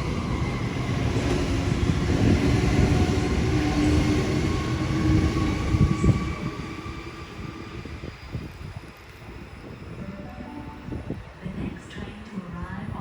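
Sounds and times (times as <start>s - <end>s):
train wheels rumbling on rails: 0.0s - 10.0s
electric train hum: 0.0s - 13.0s.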